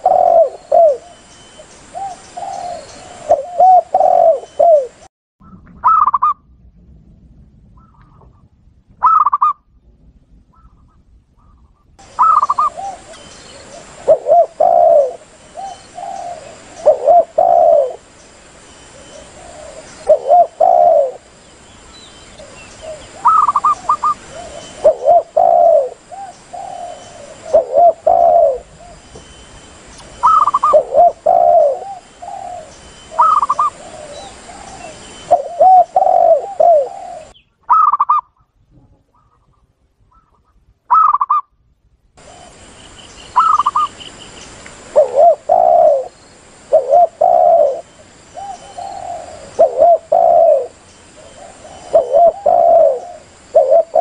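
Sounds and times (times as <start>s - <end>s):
doves cooing: 0.0s - 5.1s, 12.0s - 38.2s, 42.2s - 54.0s
recording hiss: 0.0s - 5.1s, 10.1s - 54.0s.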